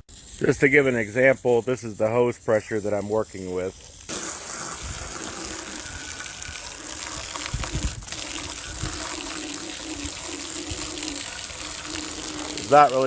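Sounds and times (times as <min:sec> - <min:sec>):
water running from garden hose: 0:00.1 - 0:13.0.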